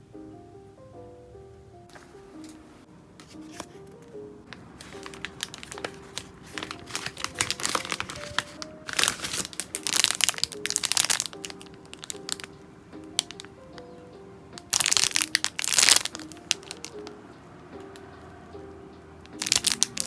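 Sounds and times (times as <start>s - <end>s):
soft background music: 0.0s - 20.0s
plastic packaging crinkling: 3.2s - 12.5s, 13.1s - 13.5s, 14.6s - 17.2s, 19.3s - 20.0s.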